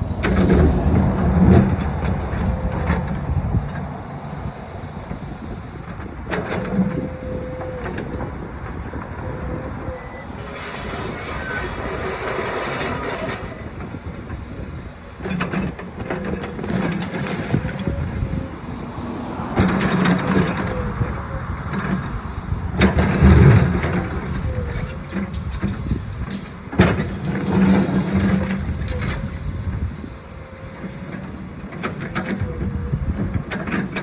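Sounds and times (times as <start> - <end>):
backhoe engine running: 0.0 - 34.0
thin whine: 10.0 - 13.9.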